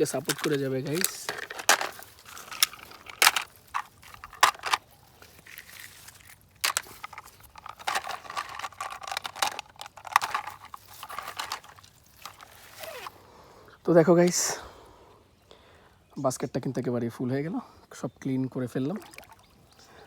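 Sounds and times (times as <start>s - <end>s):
plastic toy vehicles knocking: 0.0s - 4.8s, 6.6s - 12.4s.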